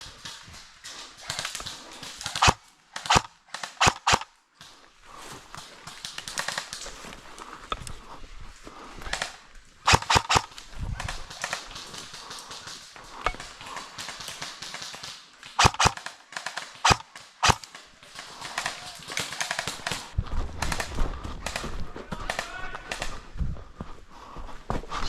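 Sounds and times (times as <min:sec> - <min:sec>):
airsoft guns firing: 0:00.0 - 0:04.3, 0:09.1 - 0:23.2
rustling and movement: 0:00.0 - 0:25.0.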